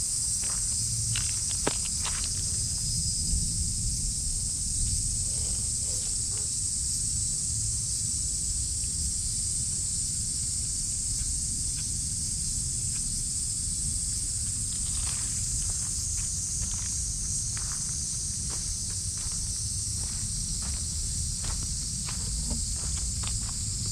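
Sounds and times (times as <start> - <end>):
cicadas buzzing: 0.0 - 23.9
low rumble: 2.2 - 7.2.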